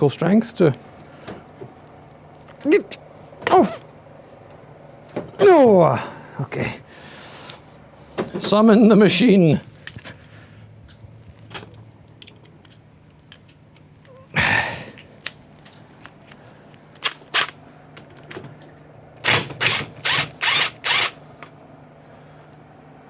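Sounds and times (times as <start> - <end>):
hand tools clicking and clanking: 17.0 - 17.6
short noisy bursts: 17.0 - 17.6, 19.2 - 21.2.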